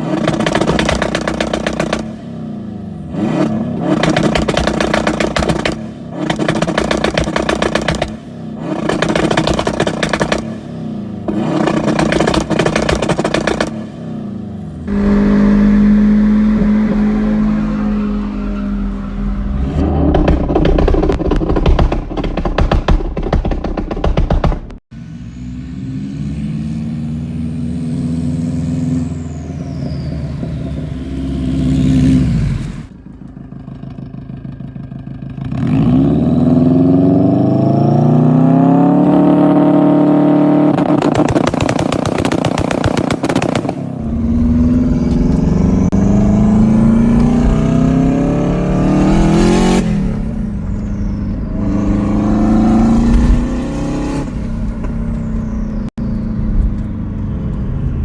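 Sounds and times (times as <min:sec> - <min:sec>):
exhaust pops: 0:00.0 - 0:02.3, 0:03.2 - 0:13.9, 0:19.6 - 0:24.8, 0:40.6 - 0:57.7
car engine revving: 0:00.0 - 0:58.0.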